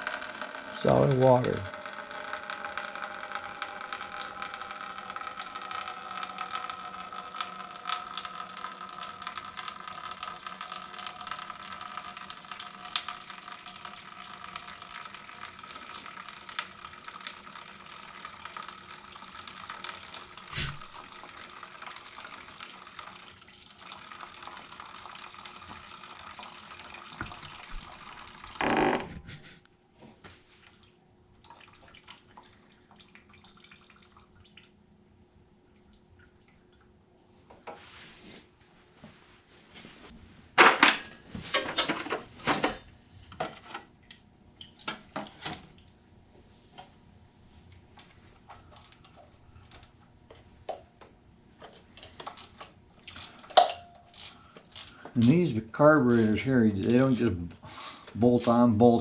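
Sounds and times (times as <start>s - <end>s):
water running from a hose: 0.0s - 29.0s, 54.2s - 59.0s.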